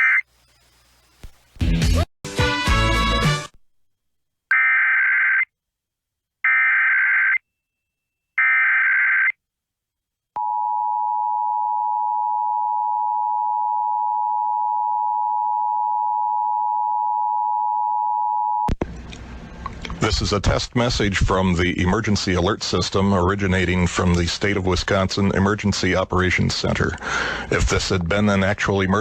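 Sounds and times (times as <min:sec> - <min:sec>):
digital data signal bursts: 0:00.0 - 0:01.5.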